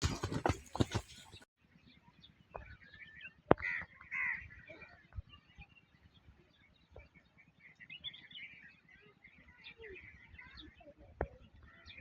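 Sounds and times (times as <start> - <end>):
small birds chirping: 0.0 - 12.0
harsh crow-like bird calls: 3.5 - 5.0.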